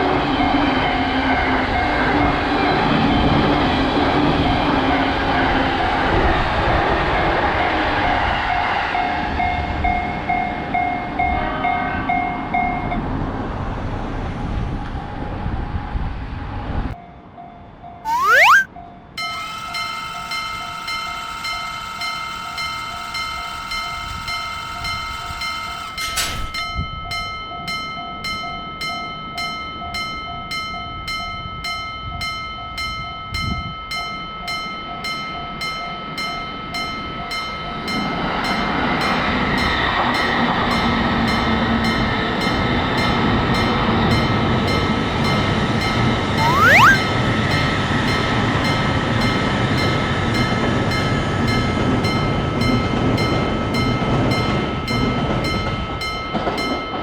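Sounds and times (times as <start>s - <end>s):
brief rising tone: 18.1s - 18.7s, 46.4s - 47.0s
level-crossing warning bell: 19.3s - 39.1s.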